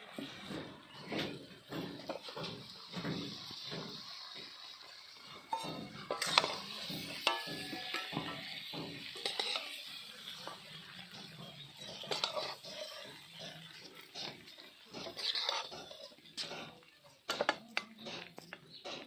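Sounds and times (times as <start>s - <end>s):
metal spoon scraping cookware: 5.2s - 19.0s.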